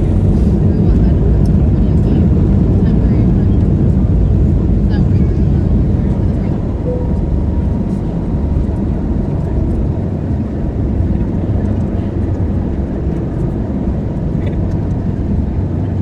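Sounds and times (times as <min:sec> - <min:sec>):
jet engine and airflow noise: 0:00.0 - 0:16.0.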